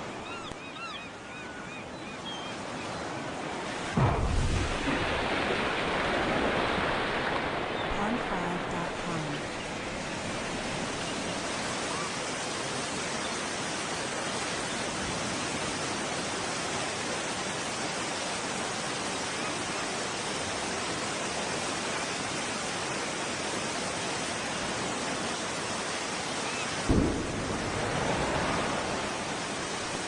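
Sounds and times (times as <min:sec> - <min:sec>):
steady rushing noise: 0:03.6 - 0:11.8, 0:26.8 - 0:30.0
sudden deep thump: 0:04.0 - 0:05.4, 0:26.9 - 0:29.5.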